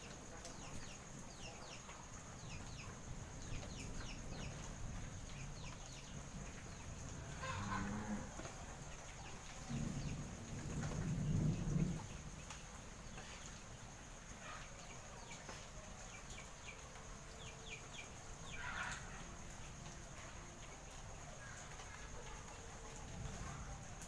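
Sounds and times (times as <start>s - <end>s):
cow mooing: 7.3s - 8.4s.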